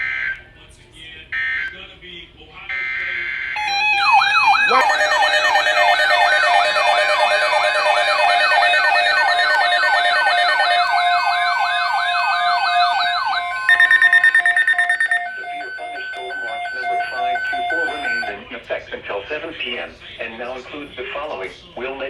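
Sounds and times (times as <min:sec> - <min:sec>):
electronic yelp siren: 0:02.7 - 0:18.3
rapid pulsed beeping: 0:03.6 - 0:18.3.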